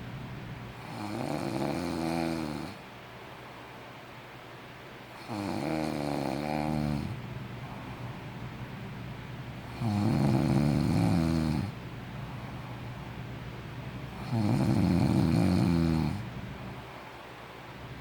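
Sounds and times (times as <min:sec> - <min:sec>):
person snoring: 0:00.8 - 0:02.8, 0:05.2 - 0:07.2, 0:09.7 - 0:11.8, 0:14.2 - 0:16.3
quiet breathing: 0:05.1 - 0:17.6.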